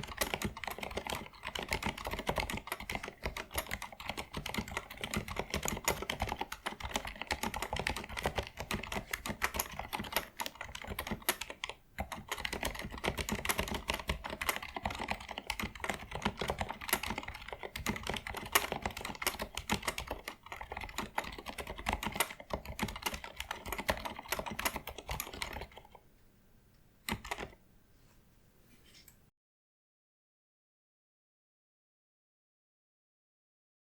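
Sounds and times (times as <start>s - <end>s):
fast mechanical keyboard typing: 0.0s - 26.0s, 27.1s - 27.6s.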